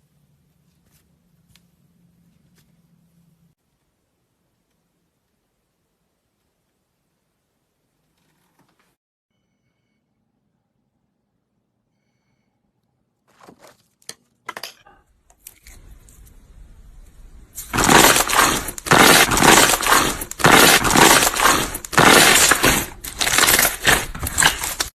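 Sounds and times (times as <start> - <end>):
slime crackling: 17.6 - 24.9.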